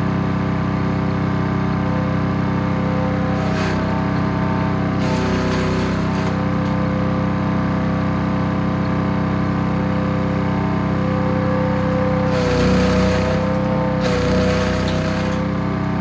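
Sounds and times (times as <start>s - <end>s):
wood chipper engine running: 0.0s - 16.0s.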